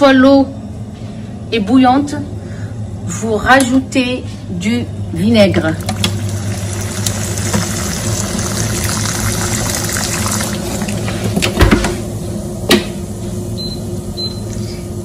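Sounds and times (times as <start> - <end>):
water boiling in a saucepan: 5.6 - 11.5.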